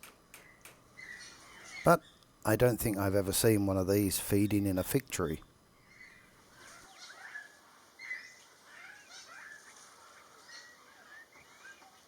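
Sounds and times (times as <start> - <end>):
small birds chirping: 0.3 - 3.6, 5.7 - 12.0.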